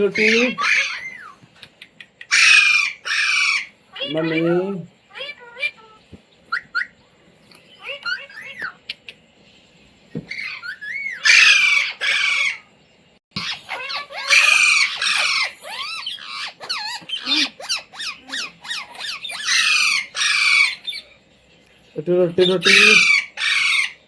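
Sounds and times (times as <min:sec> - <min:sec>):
parakeet harsh squawks: 0:00.0 - 0:01.4, 0:02.3 - 0:07.0, 0:10.3 - 0:12.7, 0:13.4 - 0:21.1, 0:22.4 - 0:24.0
parakeet whistled chirps: 0:06.5 - 0:07.0, 0:10.3 - 0:12.6.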